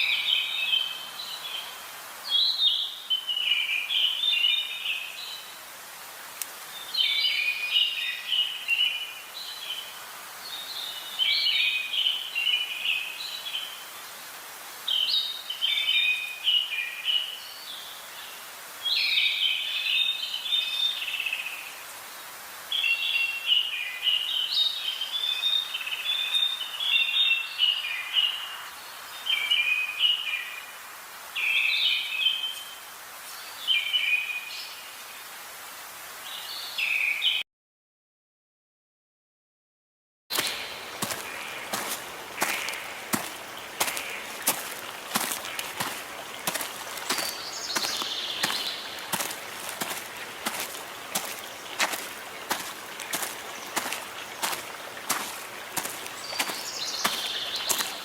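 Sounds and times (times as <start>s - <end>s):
faint steady hiss: 0.0s - 24.4s, 40.3s - 58.0s
songbird chirping: 40.3s - 58.0s.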